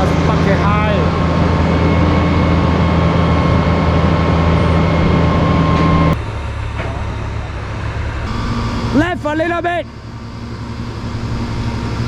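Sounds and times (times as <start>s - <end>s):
truck engine running under load: 0.0s - 12.0s.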